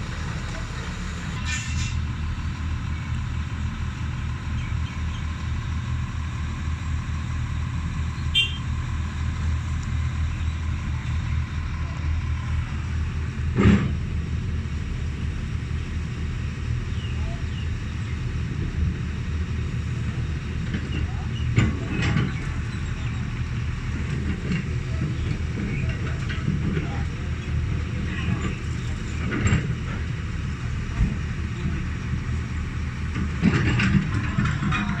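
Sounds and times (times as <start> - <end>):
diesel engine rumbling: 0.0 - 35.0.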